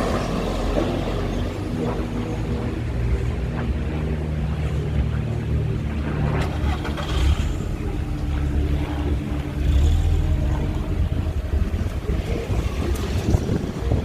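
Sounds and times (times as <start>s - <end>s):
engine droning: 0.0s - 14.0s
wind buffeting microphone: 9.1s - 14.0s.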